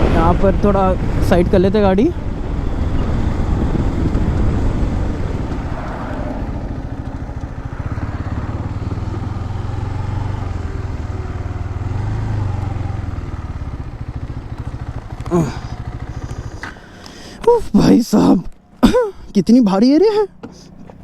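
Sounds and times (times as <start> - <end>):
motorcycle engine running: 0.0 - 19.0, 19.8 - 21.0.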